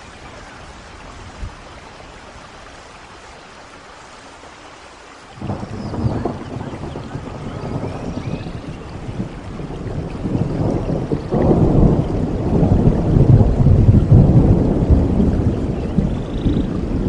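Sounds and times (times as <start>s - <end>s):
steady rain: 0.0s - 17.0s
rolling thunder: 5.4s - 17.0s.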